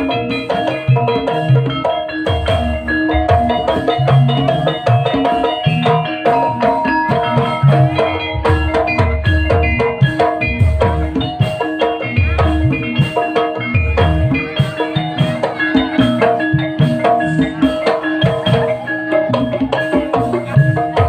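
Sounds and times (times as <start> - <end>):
metallophones ringing melody: 0.0 - 21.0.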